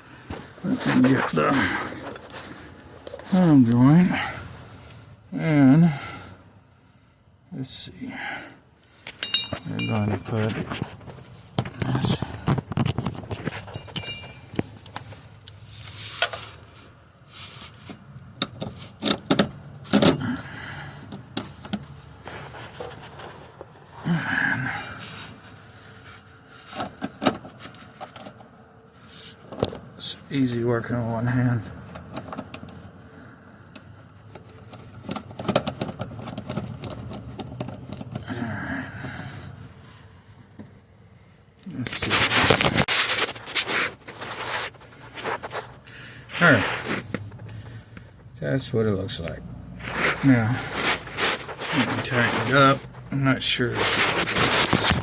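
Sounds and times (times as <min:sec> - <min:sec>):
metal hardware clinking and scraping: 0:09.0 - 0:16.5.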